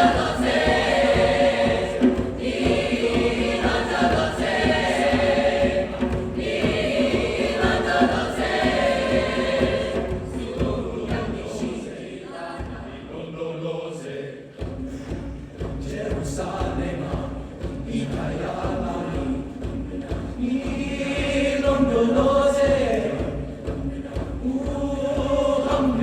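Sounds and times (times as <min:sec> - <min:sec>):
choir singing: 0:00.0 - 0:26.0.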